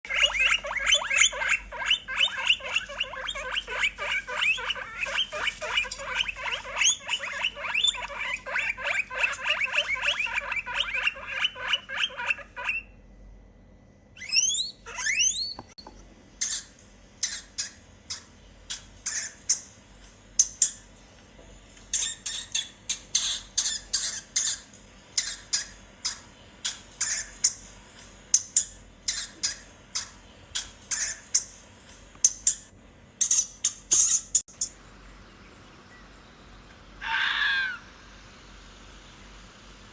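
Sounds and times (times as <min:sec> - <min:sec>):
small animals squeaking: 0:00.1 - 0:13.0, 0:14.2 - 0:15.8, 0:21.9 - 0:27.6, 0:37.0 - 0:37.8
sweeping high calls: 0:35.1 - 0:38.4.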